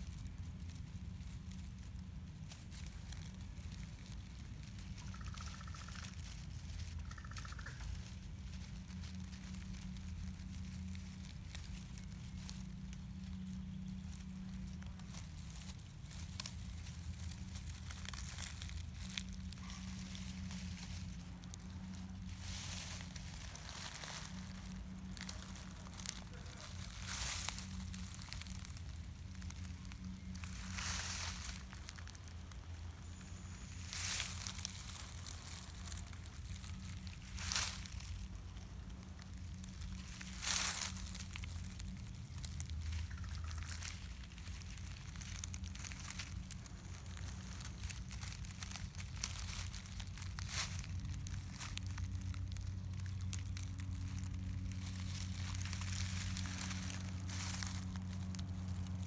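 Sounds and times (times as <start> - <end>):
crinkling rustles: 0.0 - 59.0
steady low hum: 0.0 - 59.0.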